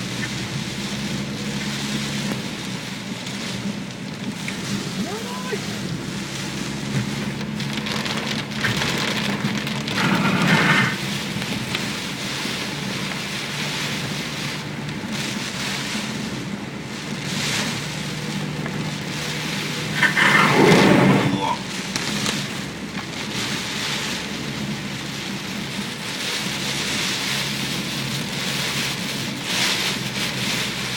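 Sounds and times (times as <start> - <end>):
heavy rain pouring: 0.0 - 30.9.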